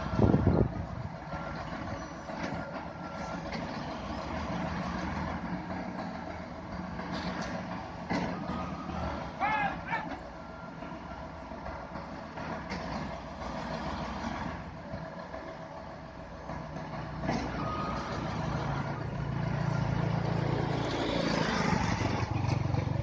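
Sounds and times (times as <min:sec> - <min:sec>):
diesel engine running and revving: 0:00.0 - 0:23.0.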